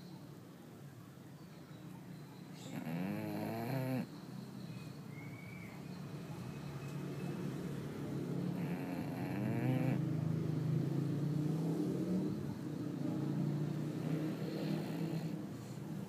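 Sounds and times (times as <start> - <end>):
dog snoring: 2.6 - 4.1, 8.5 - 10.2, 13.6 - 15.8.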